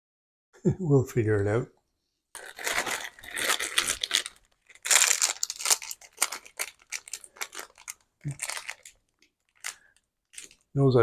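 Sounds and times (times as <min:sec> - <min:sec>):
packaging wrap crinkling and tearing: 0:02.4 - 0:10.7.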